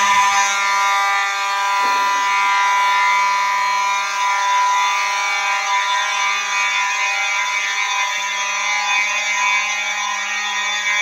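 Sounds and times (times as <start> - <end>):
fire alarm horns buzzing: 0.0 - 11.0.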